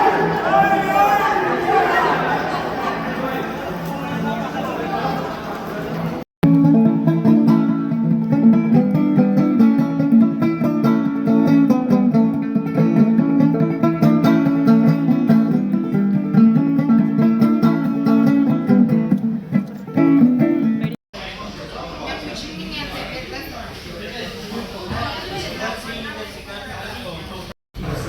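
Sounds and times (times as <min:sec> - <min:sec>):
plucked string instrument: 0:03.8 - 0:21.0.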